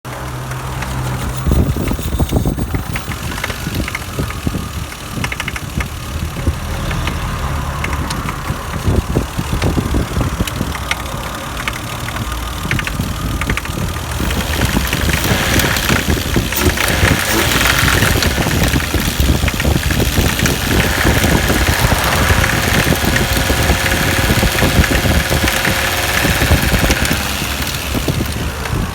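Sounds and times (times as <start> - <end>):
car engine idling: 0.1 - 28.9
irregular engine knocking: 0.1 - 28.9.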